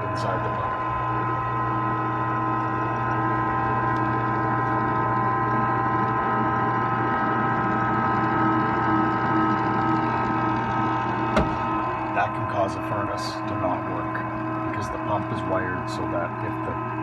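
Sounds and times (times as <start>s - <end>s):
pump motor humming: 0.0s - 17.0s
man talking: 12.1s - 16.8s.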